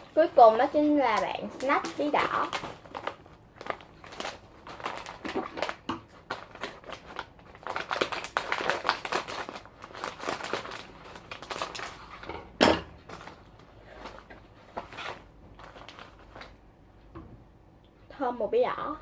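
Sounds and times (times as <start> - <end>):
plastic snack bag crinkling: 0.0 - 12.3, 13.1 - 16.6
loud plastic crack: 1.0 - 12.0.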